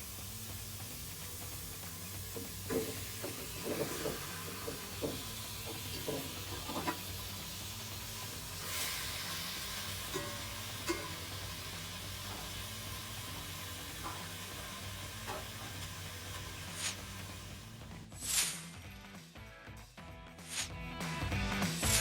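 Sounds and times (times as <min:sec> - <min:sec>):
chicken sizzling in hot oil: 0:00.0 - 0:18.7
utensil knocking and scraping pan: 0:02.4 - 0:07.1.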